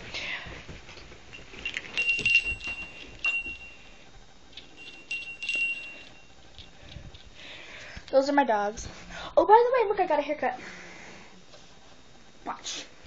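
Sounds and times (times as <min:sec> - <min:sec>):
bell clattering knocks: 0:01.3 - 0:03.8, 0:04.7 - 0:06.2
small bell ringing: 0:01.3 - 0:04.0, 0:04.6 - 0:06.7.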